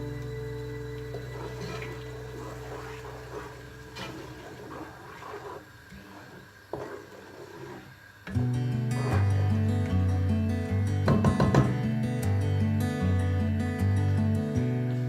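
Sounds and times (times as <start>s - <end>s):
background music: 0.0s - 4.1s, 8.4s - 15.0s
sharp knocks: 11.1s - 11.8s.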